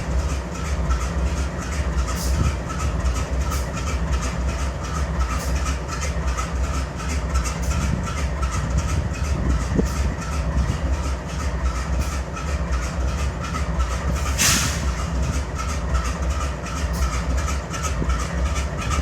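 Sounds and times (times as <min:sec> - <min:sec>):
diesel locomotive idling: 0:00.0 - 0:19.0
burst of hiss: 0:14.3 - 0:15.0.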